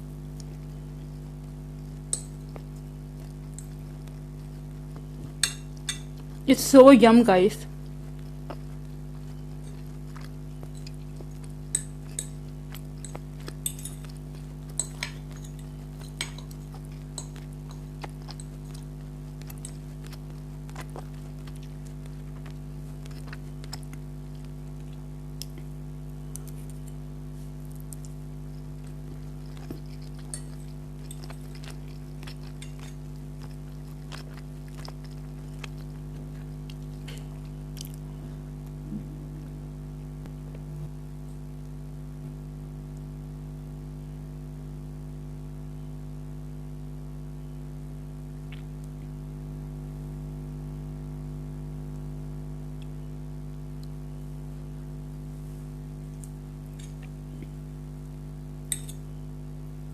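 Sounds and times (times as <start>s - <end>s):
chewing: 0.0s - 6.4s, 7.7s - 39.5s, 48.4s - 49.1s, 56.0s - 59.0s
steady low hum: 0.0s - 59.9s
fork clinking on plate: 58.7s - 59.0s.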